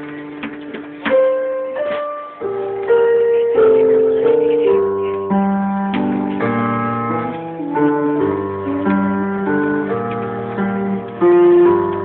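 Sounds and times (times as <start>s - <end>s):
piano chords: 0.0s - 12.0s.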